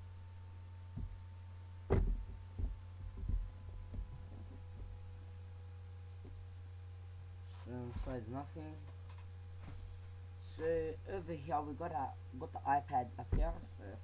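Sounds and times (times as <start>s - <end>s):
steady electrical hum: 0.0s - 14.0s
cardboard box knocks and thumps: 1.9s - 5.0s.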